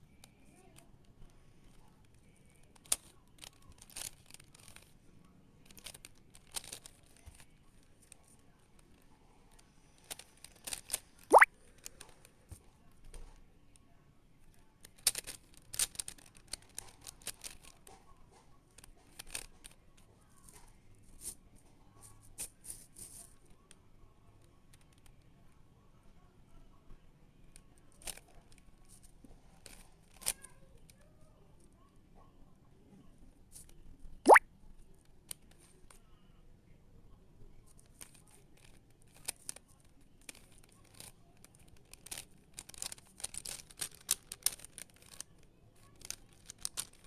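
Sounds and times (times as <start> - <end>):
puzzle cube clicking: 10.1 - 11.5.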